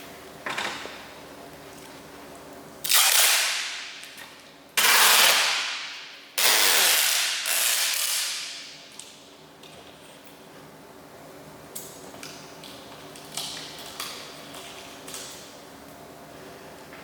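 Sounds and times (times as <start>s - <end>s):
tape ripping off roll: 2.8s - 3.9s, 4.8s - 8.6s.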